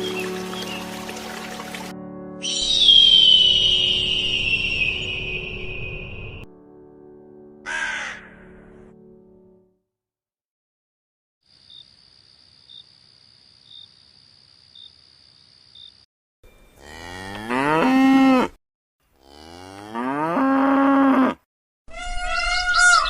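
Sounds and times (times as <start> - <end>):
high wavering animal call: 2.4 - 6.2, 21.9 - 23.0
cow mooing: 16.8 - 18.6, 19.2 - 21.4.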